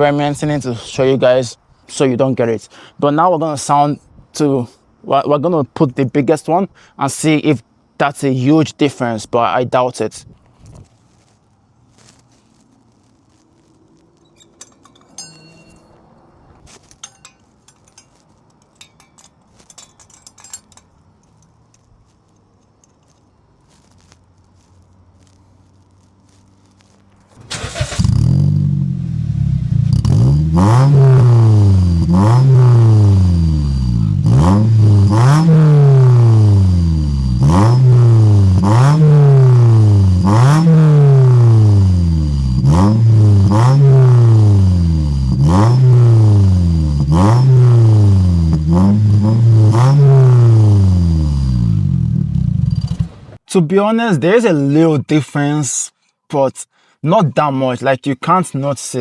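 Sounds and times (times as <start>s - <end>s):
faint clicking and rattling: 14.2s - 27.3s
car engine revving: 27.3s - 53.4s.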